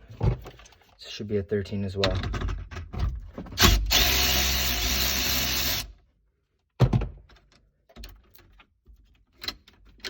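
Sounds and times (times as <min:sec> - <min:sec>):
power tool running: 0:03.6 - 0:05.9.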